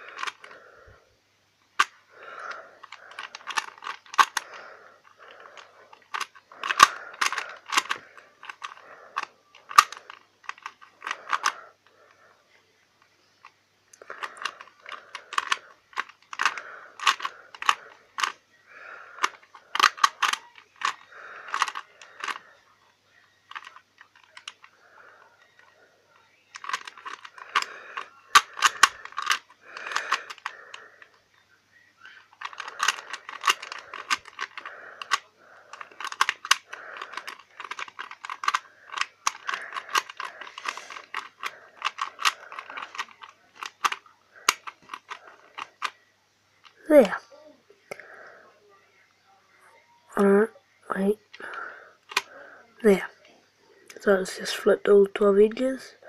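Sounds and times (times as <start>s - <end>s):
puzzle cube layers clattering: 1.8s - 11.6s, 26.5s - 31.0s, 32.2s - 45.9s.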